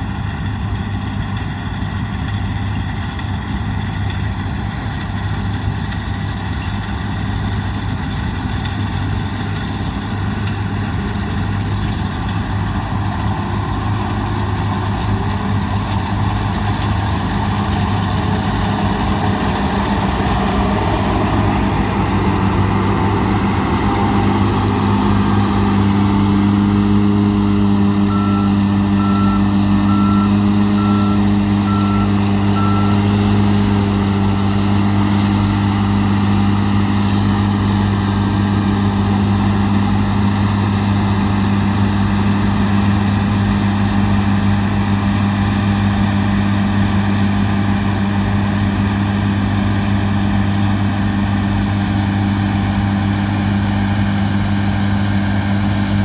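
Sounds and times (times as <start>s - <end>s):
diesel engine running: 0.0s - 56.0s
short warning beeps: 28.1s - 33.1s.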